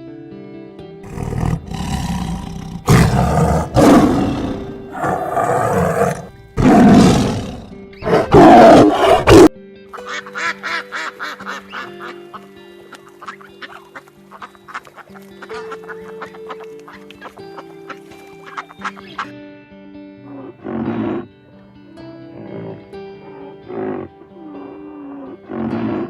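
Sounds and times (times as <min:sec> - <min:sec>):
background music: 0:00.0 - 0:26.0
rough animal calls: 0:01.0 - 0:09.5.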